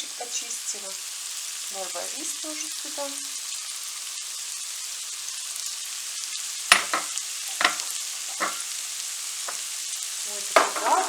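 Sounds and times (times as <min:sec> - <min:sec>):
meat and onions sizzling in pan: 0:00.0 - 0:11.0
sharp knocks: 0:06.7 - 0:08.7.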